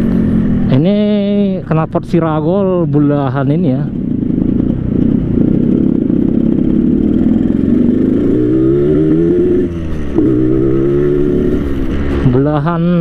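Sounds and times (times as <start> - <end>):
two-stroke motorcycle engine revving: 0.0 - 13.0.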